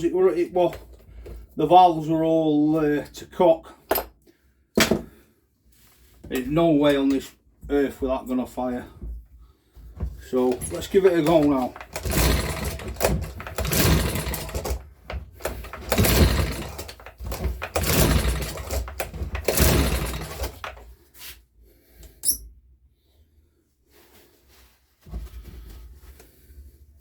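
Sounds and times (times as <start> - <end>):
recoil starter pulls: 10.2 - 20.9.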